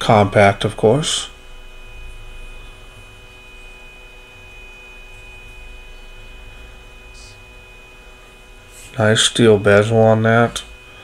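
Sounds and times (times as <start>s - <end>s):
electrical hum: 0.0s - 11.0s
high-pitched whine: 0.0s - 11.0s.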